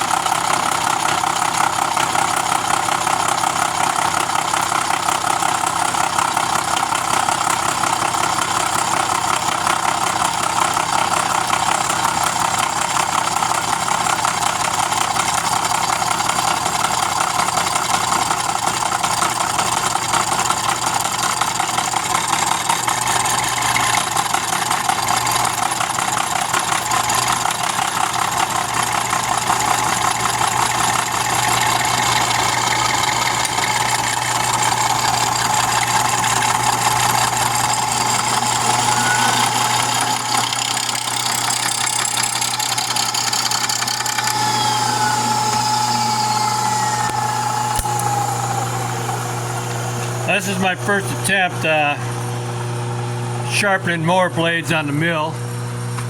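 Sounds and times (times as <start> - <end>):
milling cutter cutting steel: 26.5 - 52.8
machine hum: 26.8 - 54.1.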